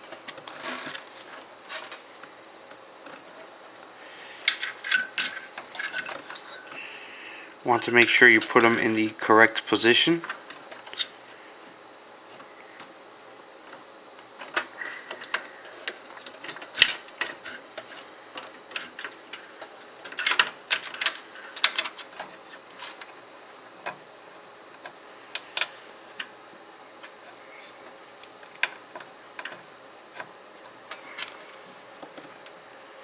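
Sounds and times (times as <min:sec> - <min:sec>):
cable connectors clicking: 0:20.0 - 0:23.1.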